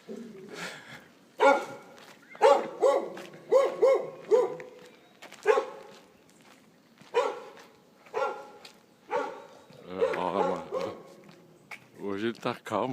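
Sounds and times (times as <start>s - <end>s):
dog barking: 1.4s - 4.8s, 5.4s - 6.0s, 7.1s - 11.2s.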